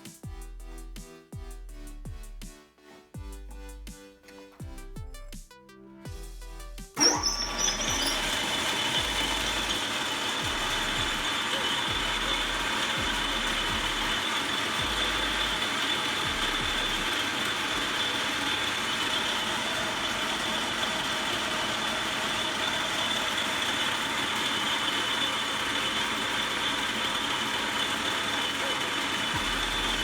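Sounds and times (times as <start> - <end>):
high whine: 7.0 - 20.2
machinery whirring: 7.0 - 30.0.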